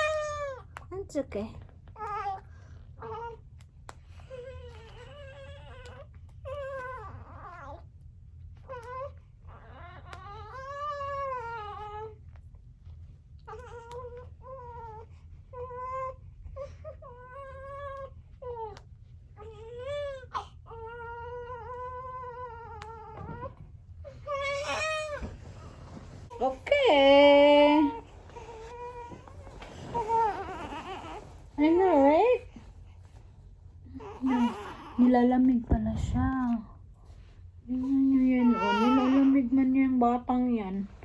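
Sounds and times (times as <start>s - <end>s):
newborn baby crying: 19.4s - 25.4s, 27.7s - 31.8s, 33.9s - 35.4s, 38.2s - 39.6s.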